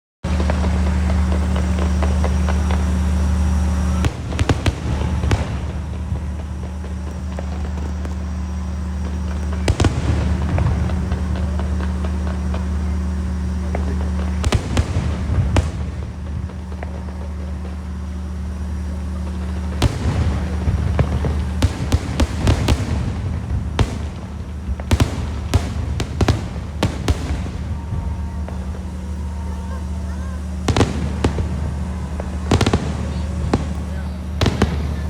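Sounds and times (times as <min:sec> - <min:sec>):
steady low hum: 0:00.2 - 0:35.0
fireworks bangs: 0:00.3 - 0:35.0.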